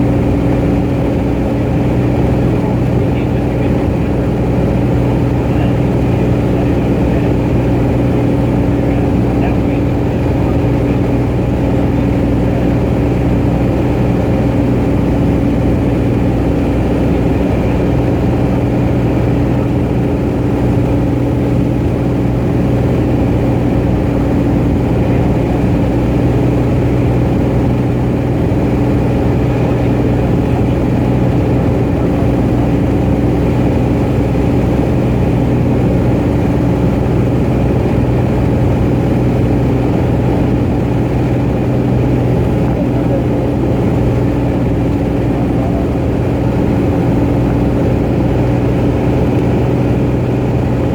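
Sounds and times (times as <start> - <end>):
aircraft engine and propeller droning: 0.0 - 50.9.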